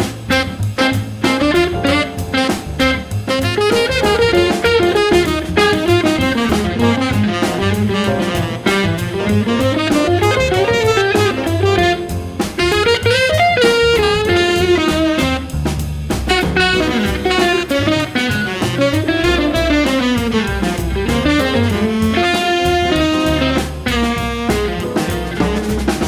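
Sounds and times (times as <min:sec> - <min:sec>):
bass and drums: 0:00.0 - 0:26.0
saxophone: 0:00.0 - 0:26.0
electric guitar solo: 0:10.1 - 0:12.0.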